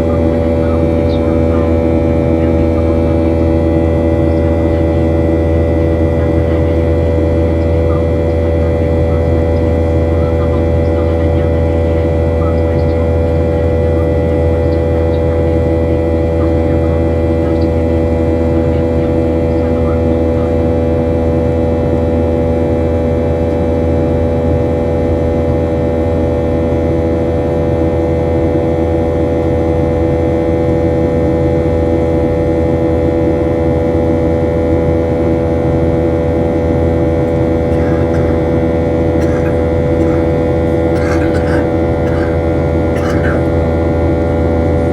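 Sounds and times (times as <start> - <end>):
jet engines droning: 0.0 - 44.9.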